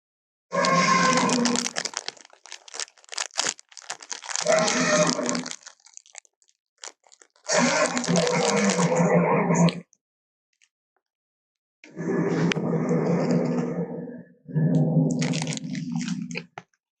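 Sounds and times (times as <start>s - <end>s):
crunching and tearing: 0.6s - 9.1s, 15.0s - 16.6s
low growling: 11.9s - 16.5s.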